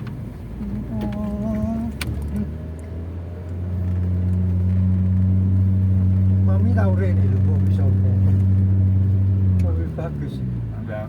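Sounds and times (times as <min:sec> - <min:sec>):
car engine and road noise: 0:00.0 - 0:11.0.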